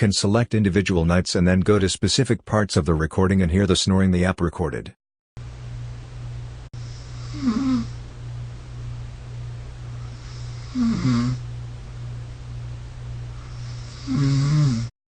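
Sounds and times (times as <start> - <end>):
steady low hum: 5.4 - 14.9
person snoring: 6.8 - 8.0, 9.9 - 11.5, 13.3 - 14.9.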